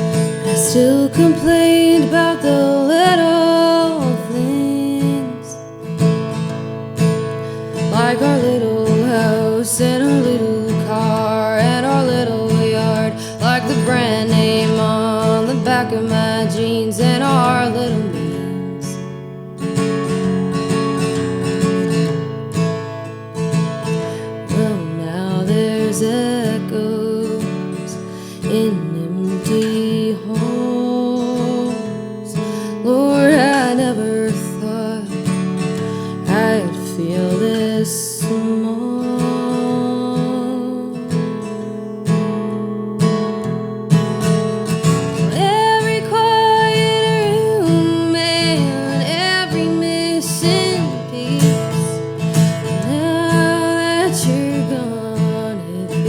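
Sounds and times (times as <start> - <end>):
person singing: 0.0 - 5.7, 24.5 - 35.2, 36.2 - 41.3, 45.1 - 56.0
acoustic guitar strumming: 0.0 - 56.0.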